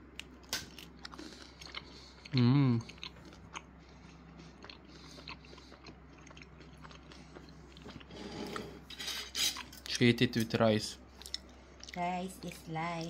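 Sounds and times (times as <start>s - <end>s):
man chewing food: 0.0s - 9.9s, 11.0s - 12.0s
man humming mmm: 2.3s - 3.0s.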